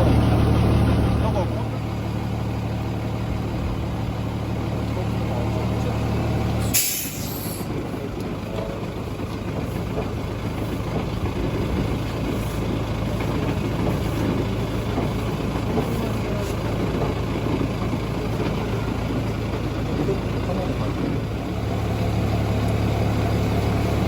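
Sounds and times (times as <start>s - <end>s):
truck engine running: 0.0s - 24.0s
hiss of released air: 6.6s - 7.7s.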